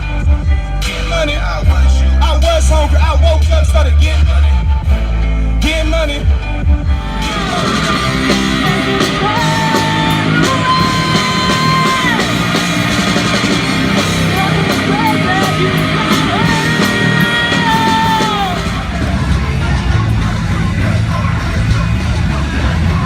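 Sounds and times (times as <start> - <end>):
rock band with guitar: 0.0 - 23.0
person singing long notes: 6.9 - 13.2, 14.0 - 23.0.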